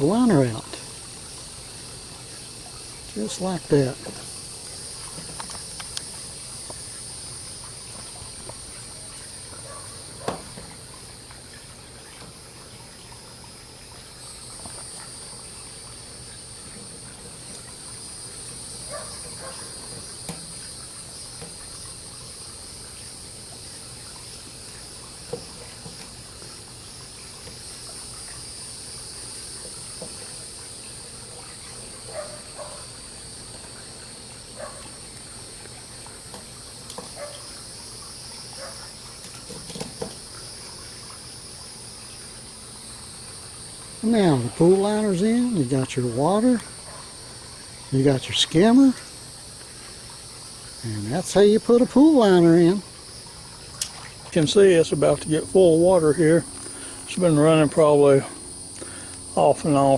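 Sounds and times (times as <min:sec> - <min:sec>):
insects buzzing: 0:00.0 - 0:59.9.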